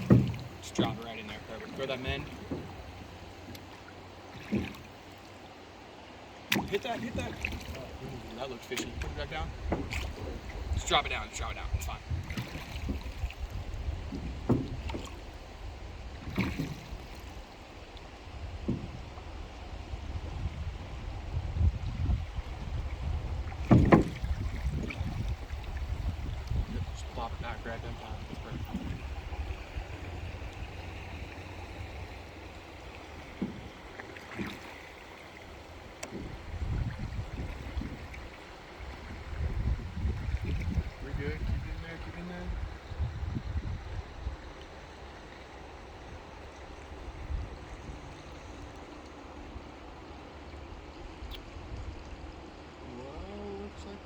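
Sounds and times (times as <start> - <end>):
short knocks: 0.0 - 3.7, 6.5 - 15.5, 18.6 - 19.1, 23.6 - 25.4, 26.5 - 39.4
river water moving: 0.0 - 54.0
wind rumble on microphone: 6.8 - 33.9, 35.7 - 45.2, 46.0 - 48.9.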